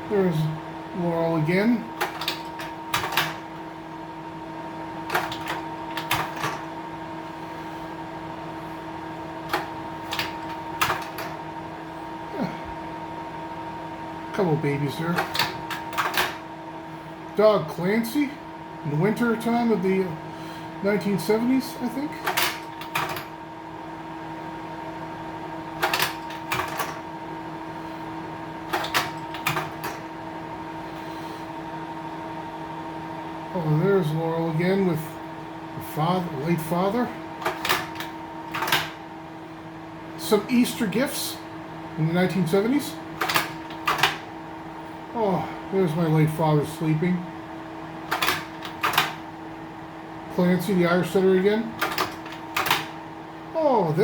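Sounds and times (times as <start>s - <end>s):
projector fan hum: 0.0s - 54.0s
slide-change mechanism clacking: 2.0s - 3.5s, 5.1s - 6.7s, 9.5s - 11.4s, 15.1s - 16.4s, 22.2s - 23.3s, 25.8s - 27.0s, 28.7s - 30.1s, 37.4s - 39.0s, 43.2s - 44.3s, 48.1s - 49.2s, 51.8s - 53.0s.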